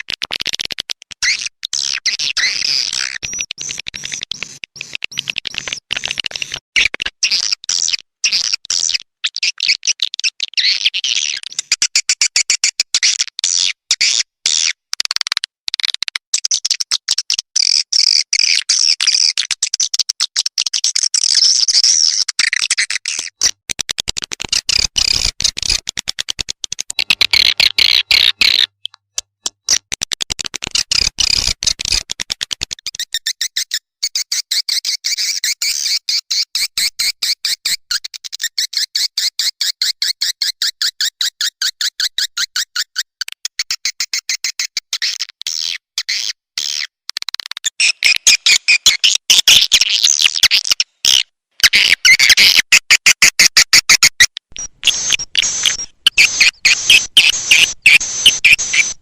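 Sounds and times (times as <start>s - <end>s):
swiftlet chirping clicks: 54.2s - 59.0s.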